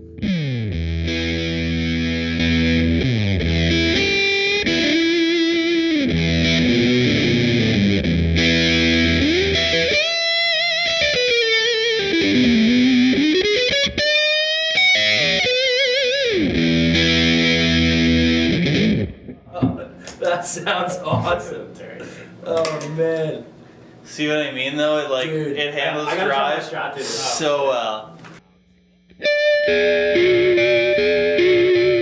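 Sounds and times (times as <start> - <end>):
distorted electric guitar: 0.0 - 19.8, 28.8 - 32.0.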